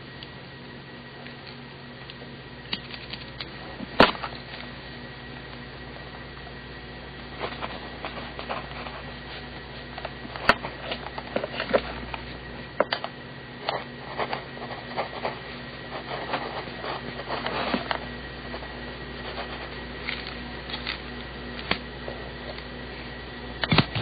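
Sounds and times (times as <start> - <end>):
steady low hum: 0.0 - 24.0
pencil scratching on paper: 14.0 - 17.8.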